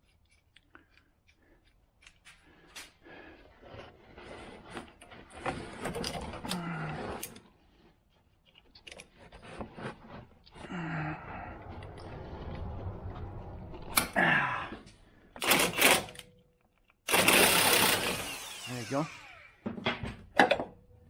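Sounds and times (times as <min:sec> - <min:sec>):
scraping and clatter: 0:03.6 - 0:16.2.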